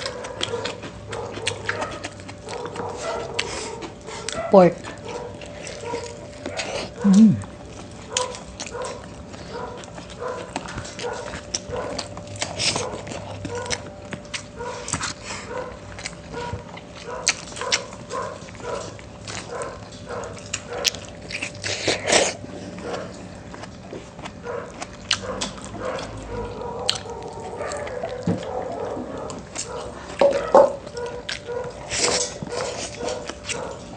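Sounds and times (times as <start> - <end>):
person chewing: 0.0 - 33.9
dog crying: 1.7 - 7.5.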